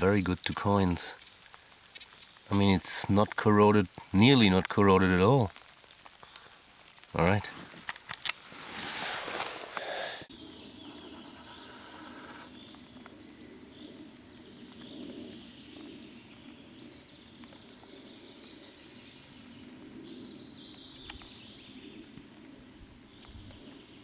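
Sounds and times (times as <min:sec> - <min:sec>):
small birds singing: 0:08.2 - 0:24.0.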